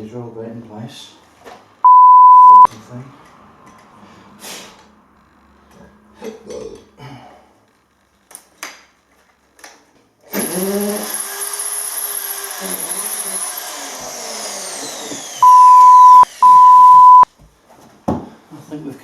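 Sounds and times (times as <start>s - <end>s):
censor bleep: 1.9s - 2.7s, 15.4s - 17.3s.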